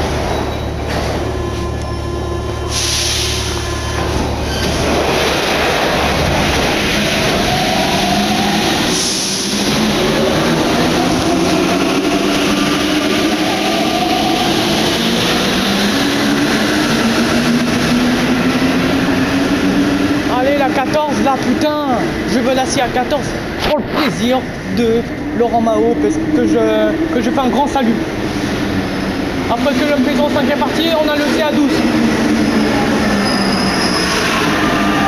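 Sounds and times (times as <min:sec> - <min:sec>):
train traction motors whining: 0:00.0 - 0:20.6.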